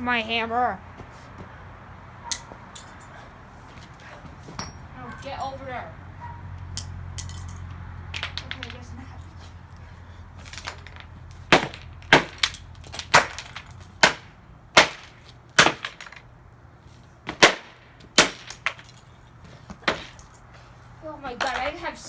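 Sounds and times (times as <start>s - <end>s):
hammer blows cracking plastic: 10.4s - 16.3s, 17.3s - 20.4s.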